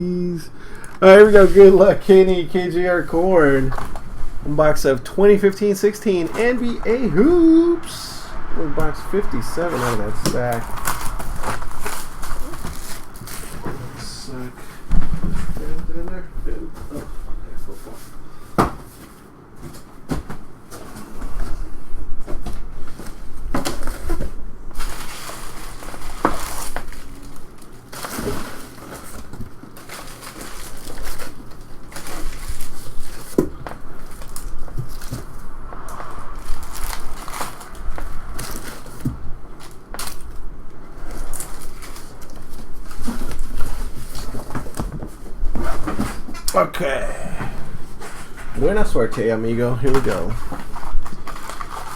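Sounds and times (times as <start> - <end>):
plastic wrap crinkling: 9.6 - 14.8, 22.8 - 35.5, 36.4 - 46.3, 49.7 - 51.9.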